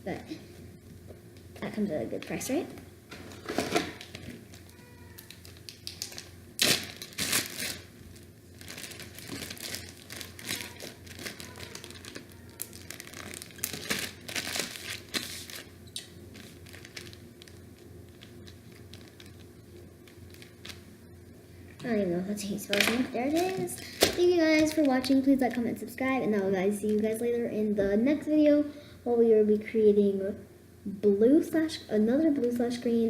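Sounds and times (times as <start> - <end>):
crinkling handling noise: 3.1 - 21.0, 21.6 - 25.7.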